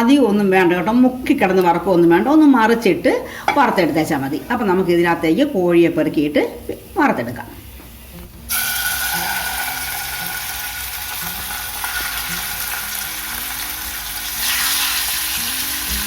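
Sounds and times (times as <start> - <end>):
chicken sizzling in hot oil: 8.0 - 16.0.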